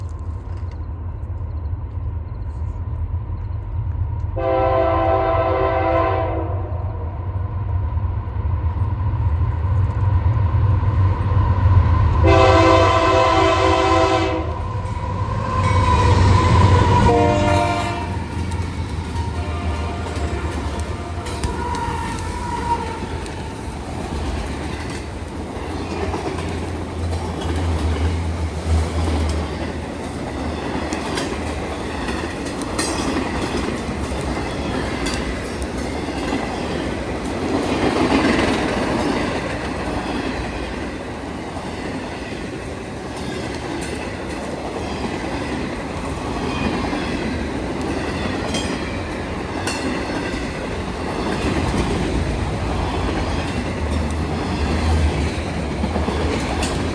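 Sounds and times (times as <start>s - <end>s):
freight train cars clattering: 12.1s - 56.9s.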